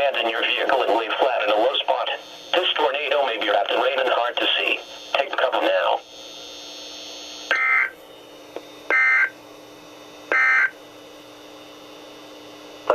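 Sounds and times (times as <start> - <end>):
low radio hum: 0.0 - 12.9
digital code bursts: 8.9 - 9.3, 10.3 - 10.7.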